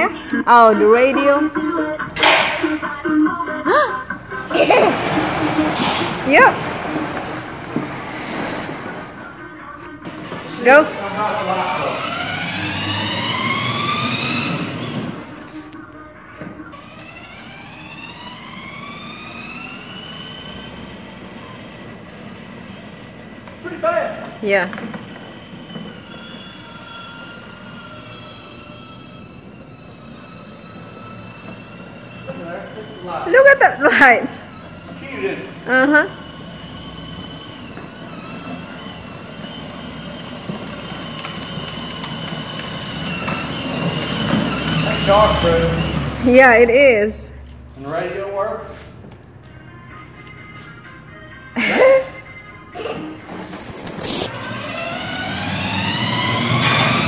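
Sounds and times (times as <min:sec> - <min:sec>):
electric toy motor whining: 0:10.5 - 0:15.4, 0:16.7 - 0:46.6, 0:53.4 - 0:57.0.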